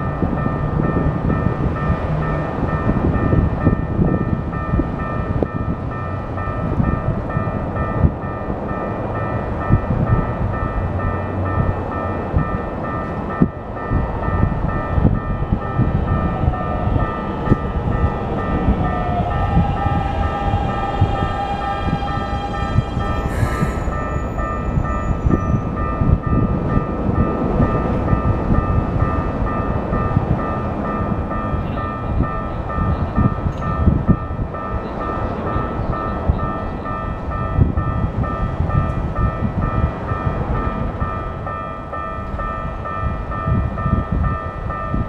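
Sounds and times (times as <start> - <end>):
level crossing warning bell: 0.0 - 45.0
train motor whine: 18.4 - 25.4.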